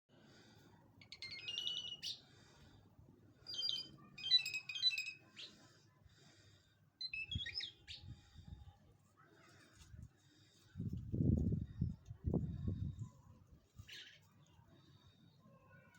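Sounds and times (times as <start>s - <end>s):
lark chirping and trilling: 1.0s - 2.2s, 3.5s - 5.5s, 7.0s - 8.0s.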